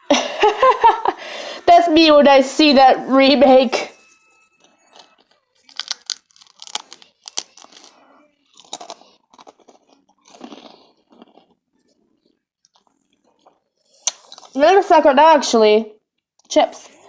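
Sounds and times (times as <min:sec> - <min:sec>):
person chewing crunchy chips: 0:04.6 - 0:14.6.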